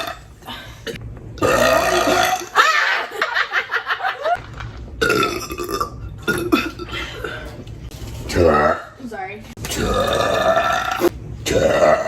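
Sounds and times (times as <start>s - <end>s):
person burping: 0.0s - 2.6s, 5.0s - 7.0s, 8.3s - 9.0s, 9.7s - 12.0s.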